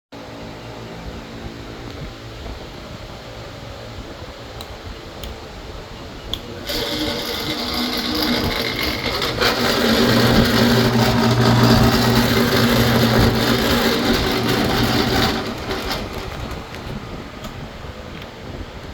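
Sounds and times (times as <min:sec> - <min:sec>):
drill press motor hum: 0:06.6 - 0:17.6.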